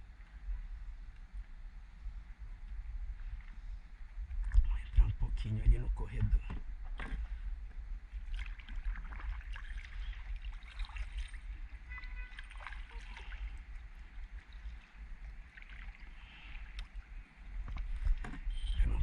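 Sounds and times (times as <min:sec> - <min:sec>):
steady low rumble: 0:00.0 - 0:19.0
water splashing around kayak: 0:06.0 - 0:19.0.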